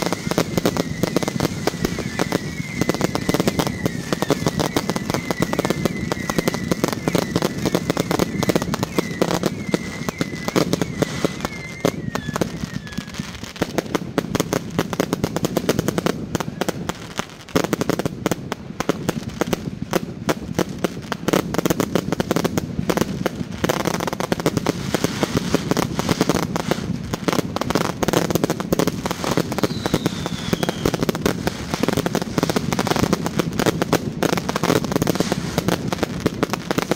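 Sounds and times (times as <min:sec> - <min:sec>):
fireworks crackling bangs: 0:00.0 - 0:36.9
fireworks whistle: 0:00.0 - 0:36.9.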